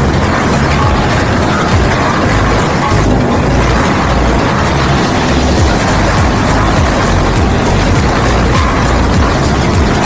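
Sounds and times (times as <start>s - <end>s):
concrete mixer running: 0.0s - 10.0s.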